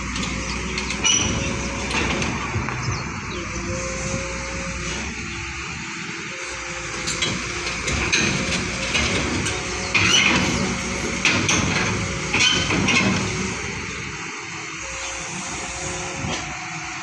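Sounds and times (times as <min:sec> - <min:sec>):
excavator diesel engine running: 0:00.0 - 0:17.0
metal clanks: 0:07.0 - 0:13.3.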